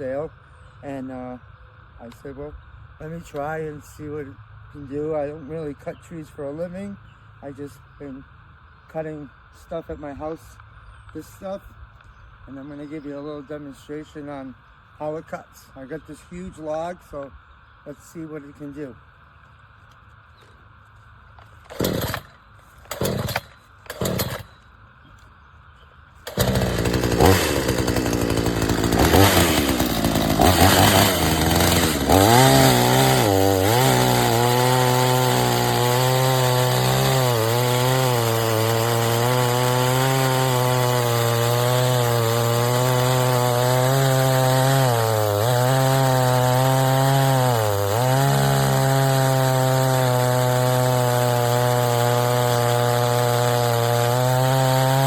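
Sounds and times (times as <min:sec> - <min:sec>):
chainsaw cutting log: 0:21.4 - 0:24.5, 0:26.2 - 0:55.0
chainsaw pull-start bursts: 0:21.4 - 0:24.5, 0:26.2 - 0:55.0.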